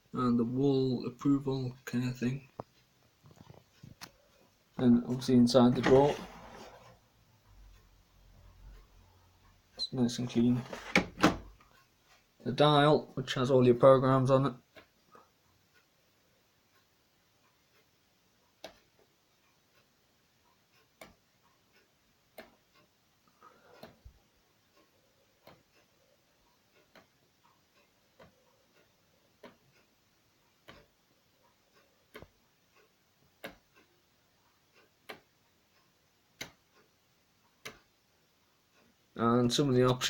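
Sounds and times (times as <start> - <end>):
washing machine dial clicks: 10.6 - 11.6.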